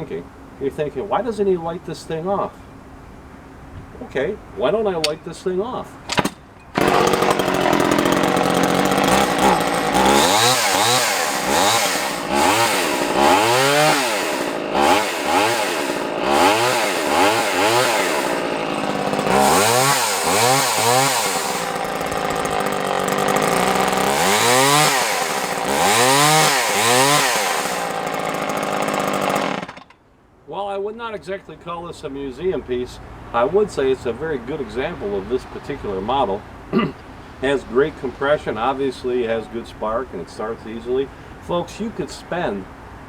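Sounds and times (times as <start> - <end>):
chainsaw engine revving: 6.1 - 29.9.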